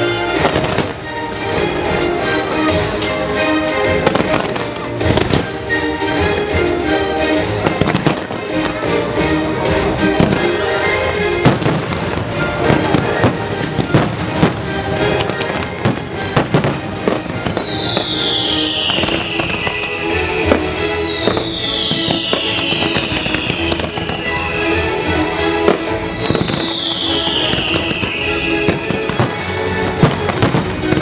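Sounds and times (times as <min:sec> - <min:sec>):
fireworks bursting: 0:00.0 - 0:31.0
loud show music: 0:00.0 - 0:31.0
firework whistles gliding down: 0:16.4 - 0:29.4.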